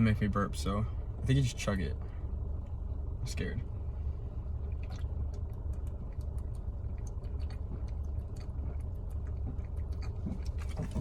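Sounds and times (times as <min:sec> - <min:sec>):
steady low rumble: 0:00.0 - 0:11.0
gulping and swallowing clicks: 0:04.6 - 0:11.0.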